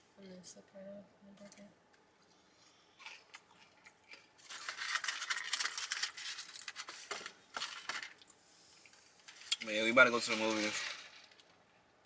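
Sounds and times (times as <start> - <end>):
packaging rustling and crinkling: 4.1 - 8.2, 9.2 - 11.5.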